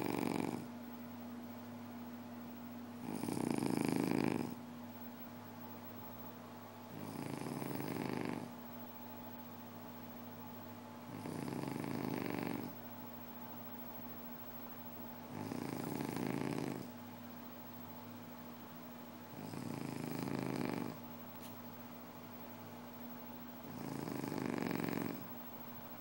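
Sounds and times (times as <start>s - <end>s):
snoring: 0.0s - 0.7s, 3.0s - 4.6s, 6.9s - 8.5s, 11.1s - 12.8s, 15.3s - 16.9s, 19.3s - 21.0s, 23.6s - 25.3s.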